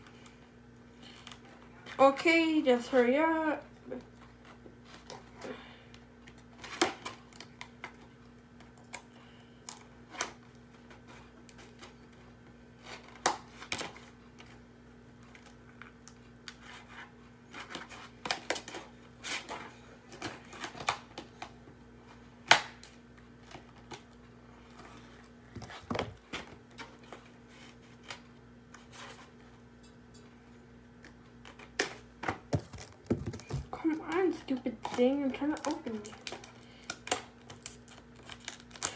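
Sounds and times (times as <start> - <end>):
packaging rustling: 32.5 - 38.9.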